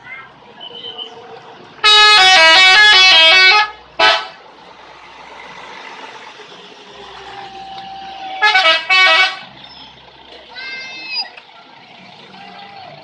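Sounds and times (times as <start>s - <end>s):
traffic: 0.0s - 13.0s
bus horn playing a tune: 1.8s - 4.4s, 8.4s - 9.5s.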